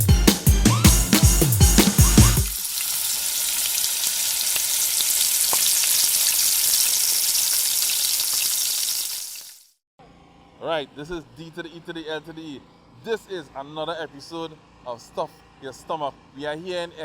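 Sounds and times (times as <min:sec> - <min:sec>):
food sizzling while frying: 0:02.4 - 0:09.8.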